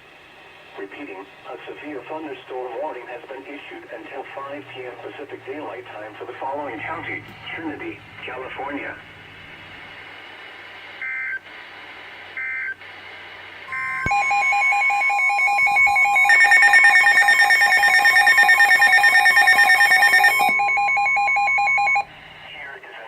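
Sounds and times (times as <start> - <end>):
steady warning alarm tone: 4.3 - 10.0, 13.7 - 22.6
rapid pulsing alert beeps: 13.7 - 22.2.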